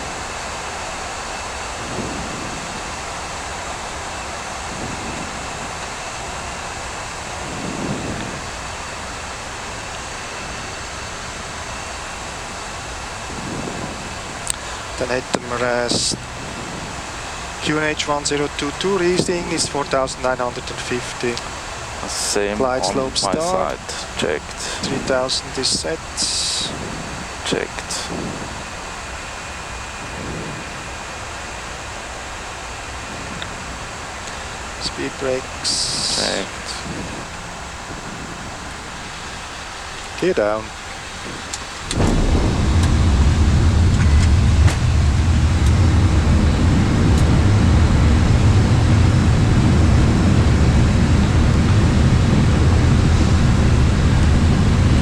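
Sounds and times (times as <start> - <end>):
air-conditioning noise: 0.0 - 55.0
airflow rushing: 0.0 - 55.0
faint steady high tone: 22.1 - 25.2.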